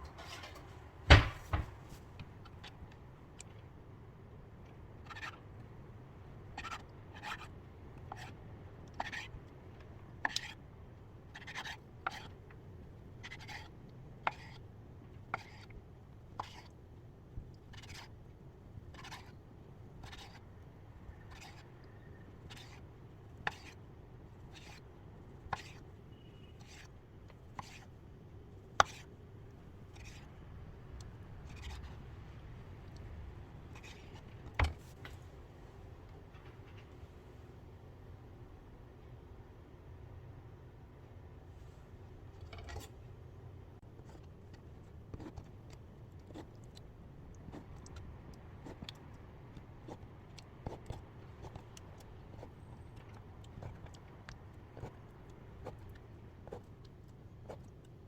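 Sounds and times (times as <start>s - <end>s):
thump: 1.1s - 1.8s.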